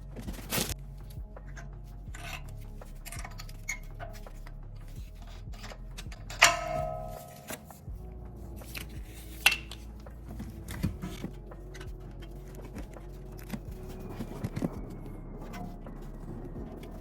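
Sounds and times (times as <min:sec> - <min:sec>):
metal tools clinking: 0:05.6 - 0:07.8.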